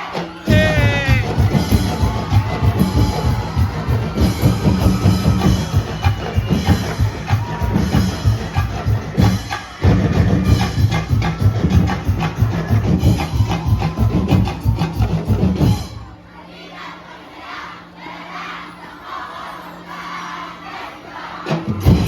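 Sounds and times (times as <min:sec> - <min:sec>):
drum-heavy dance music: 0:00.0 - 0:16.1, 0:21.5 - 0:22.0.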